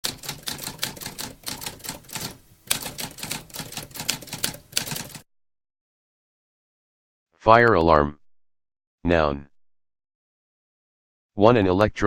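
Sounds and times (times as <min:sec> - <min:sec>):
typewriter keys striking: 0:00.0 - 0:05.2.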